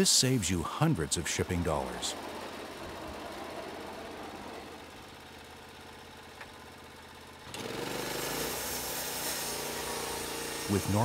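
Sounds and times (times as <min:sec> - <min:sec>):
motor running steadily: 0:00.4 - 0:11.0
machine spinning up with hiss: 0:07.5 - 0:11.0.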